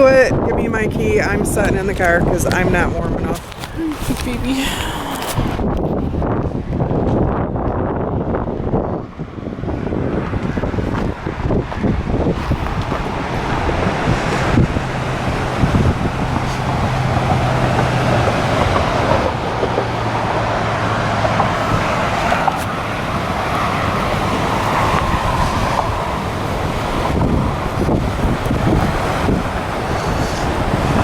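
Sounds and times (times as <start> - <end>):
wind blowing over microphone: 0.0 - 31.0
waves breaking on shore: 10.8 - 31.0.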